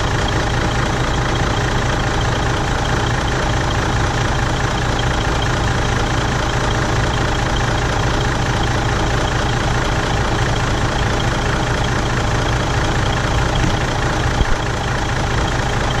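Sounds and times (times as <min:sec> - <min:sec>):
diesel engine idling: 0:00.0 - 0:16.0
air compressor humming: 0:13.2 - 0:14.8.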